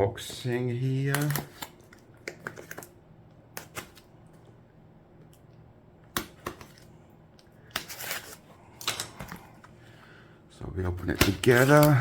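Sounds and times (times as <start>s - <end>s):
packaging clicks and taps: 1.1s - 3.0s.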